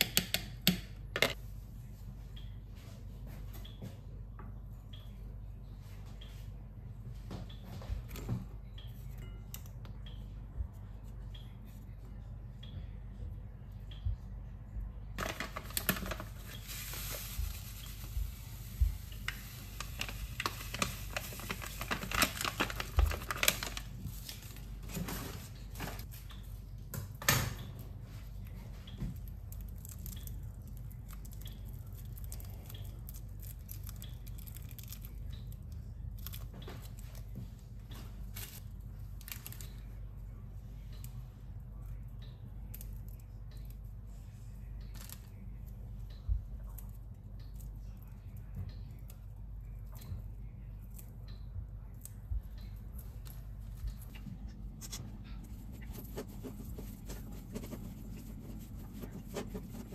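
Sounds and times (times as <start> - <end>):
steady hiss: 16.3 - 21.4
rustling and tearing: 19.2 - 26.1, 53.2 - 59.9.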